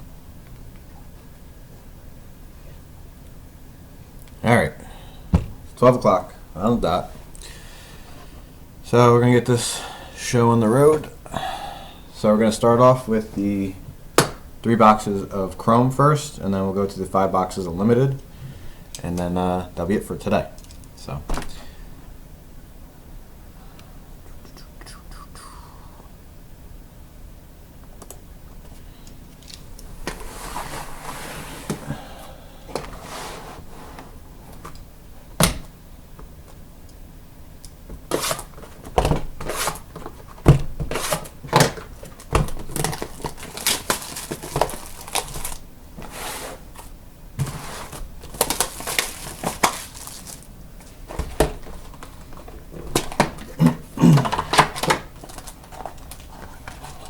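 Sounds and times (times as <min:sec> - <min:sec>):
boxes and wrappers clicking: 0:38.1 - 0:46.2, 0:46.8 - 0:50.5, 0:51.1 - 0:57.0
packaging being torn and crinkled: 0:42.2 - 0:45.6, 0:48.3 - 0:50.5.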